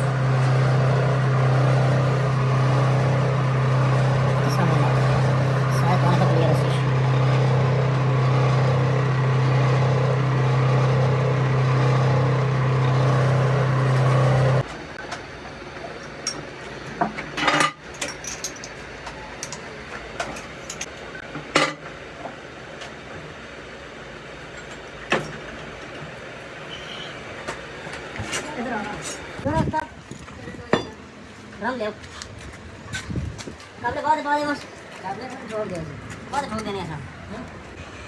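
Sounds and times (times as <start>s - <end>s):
machine humming: 0.0s - 14.7s.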